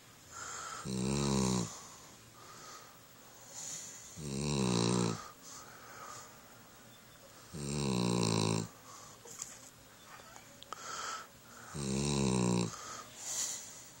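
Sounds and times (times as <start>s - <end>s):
soft breaths: 0.2s - 4.3s, 5.0s - 7.7s, 8.6s - 12.0s, 12.6s - 14.0s
loud snoring: 0.7s - 1.8s, 4.2s - 5.3s, 7.5s - 8.7s, 11.6s - 12.8s.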